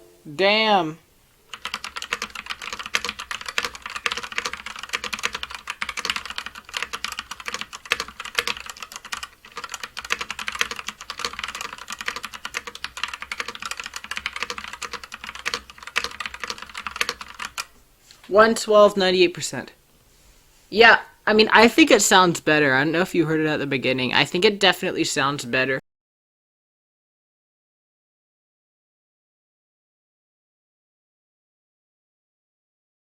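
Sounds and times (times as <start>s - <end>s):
mechanical keyboard typing: 1.5s - 17.7s.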